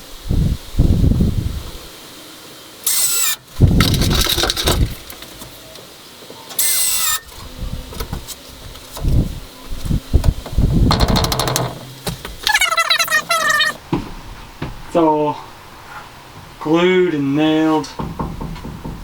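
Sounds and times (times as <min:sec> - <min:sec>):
power tool whirring: 0:02.8 - 0:05.5, 0:06.6 - 0:07.5
wood knocking and thumping: 0:10.2 - 0:12.5, 0:18.0 - 0:19.0.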